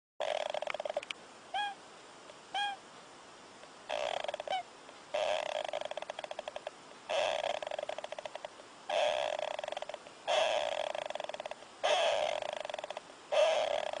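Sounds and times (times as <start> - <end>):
animal snoring: 0.2 - 1.1, 3.9 - 14.0.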